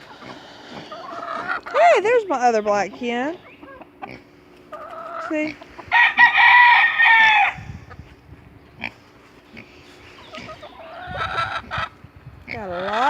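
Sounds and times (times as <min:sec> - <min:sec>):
chickens clucking softly: 0:00.0 - 0:02.1, 0:02.8 - 0:05.9, 0:09.5 - 0:13.0
rooster crowing: 0:05.9 - 0:07.7.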